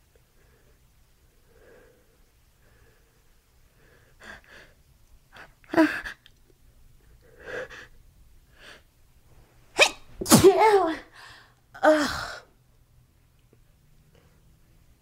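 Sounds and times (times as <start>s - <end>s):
woman gasping breaths: 11.1s - 12.5s.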